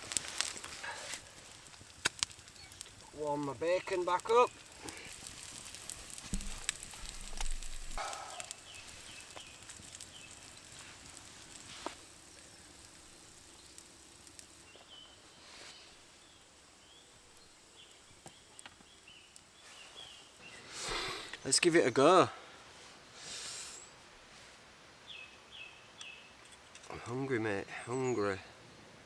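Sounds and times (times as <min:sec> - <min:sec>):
bacon crackling in a pan: 0:00.0 - 0:22.1.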